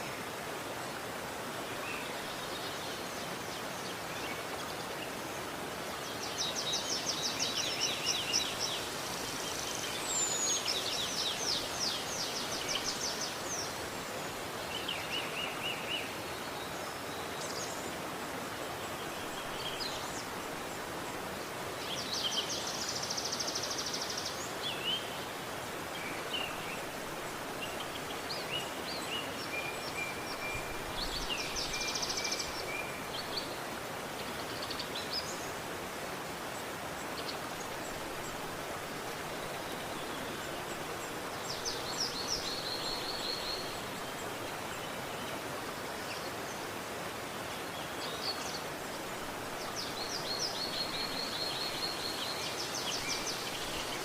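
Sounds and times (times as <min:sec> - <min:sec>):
river rushing: 0:00.0 - 0:54.0
small birds singing: 0:01.0 - 0:54.0.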